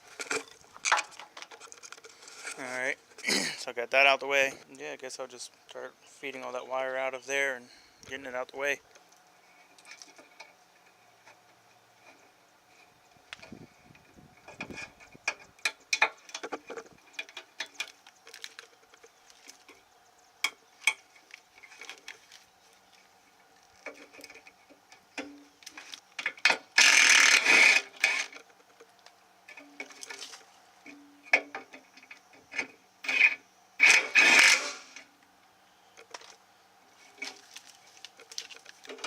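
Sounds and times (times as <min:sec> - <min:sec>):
scraping rustle: 0:00.0 - 0:03.3, 0:21.0 - 0:24.8, 0:29.5 - 0:31.0, 0:36.0 - 0:39.0
wires and clips rattling: 0:37.0 - 0:39.0.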